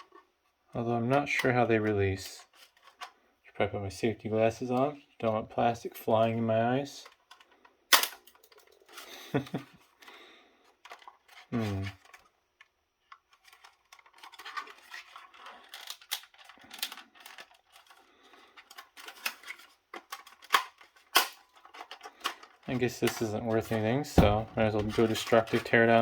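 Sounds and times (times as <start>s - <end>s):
tool scraping plastic housing: 18.6s - 26.0s.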